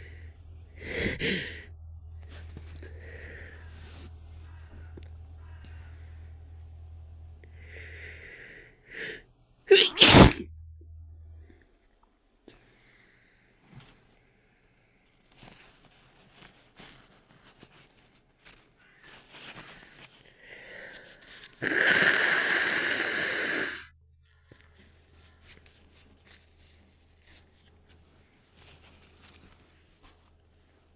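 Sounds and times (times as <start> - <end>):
rush of air: 9.7 - 10.4
woman sniffling: 9.7 - 10.4.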